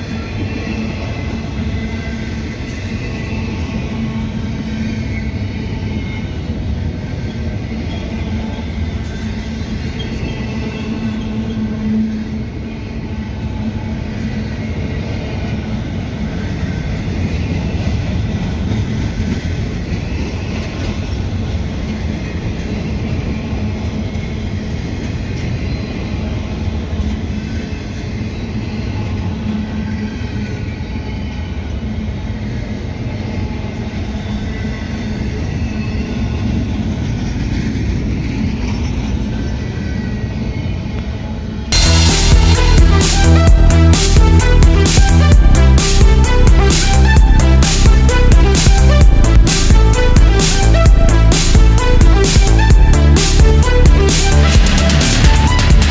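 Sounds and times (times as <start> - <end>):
train wheels rumbling on rail: 0.0 - 55.9.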